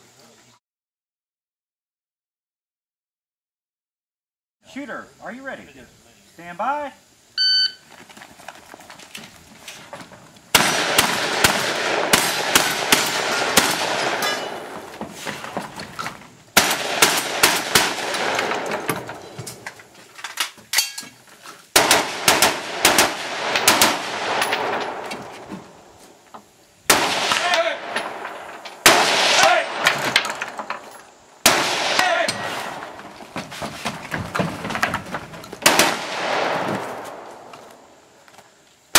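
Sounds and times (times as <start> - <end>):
rapid gunshots with echo: 10.6 - 14.9, 16.6 - 18.8, 21.8 - 25.0.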